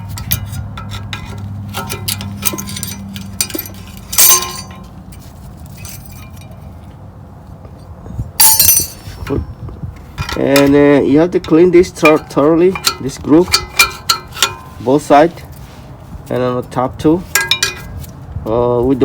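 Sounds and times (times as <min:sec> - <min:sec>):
metal shims clicking and clinking: 0:00.1 - 0:06.7, 0:08.4 - 0:09.3
loud ringing metal clink: 0:01.8 - 0:05.0, 0:08.4 - 0:09.3, 0:17.4 - 0:17.9.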